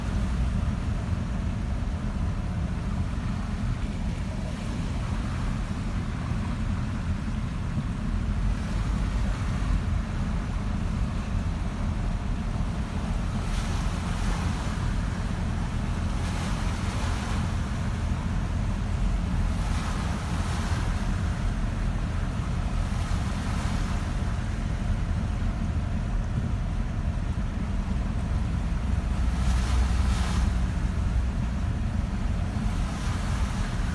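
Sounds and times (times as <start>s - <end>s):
vehicle engine and road rumble: 0.0s - 33.9s
water rushing and splashing: 11.0s - 33.9s.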